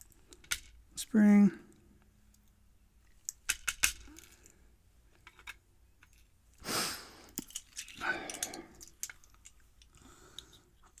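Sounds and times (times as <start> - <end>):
short breath-like rush: 6.6 - 7.4.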